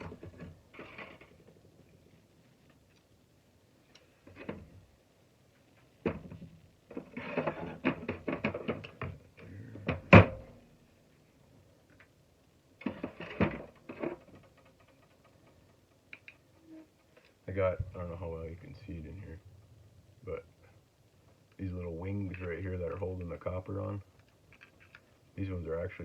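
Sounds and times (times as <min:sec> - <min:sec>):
metal parts clicking and knocking: 0:12.8 - 0:17.4.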